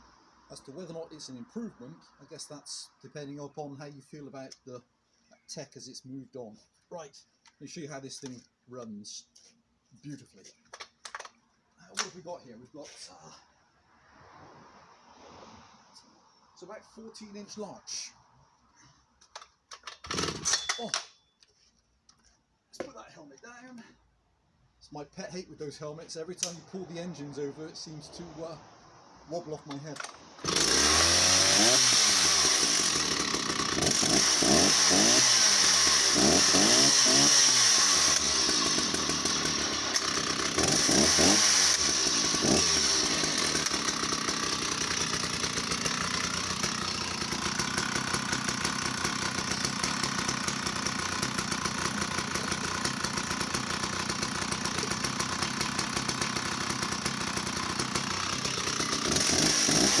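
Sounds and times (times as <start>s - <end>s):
chainsaw engine revving: 19.8s - 20.9s, 29.3s - 60.0s.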